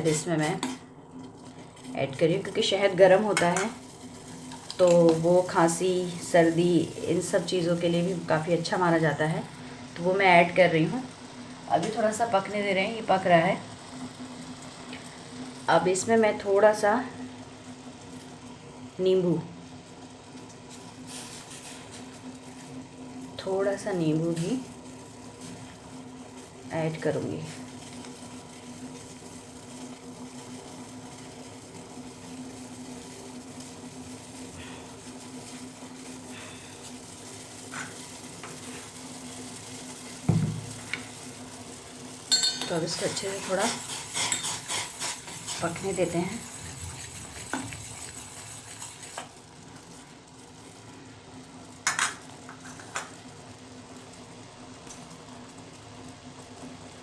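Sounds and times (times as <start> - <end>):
low mechanical hum: 0.0 - 57.0
tea simmering with faint hiss: 0.0 - 57.0
utensil clinking against pan: 42.3 - 44.9.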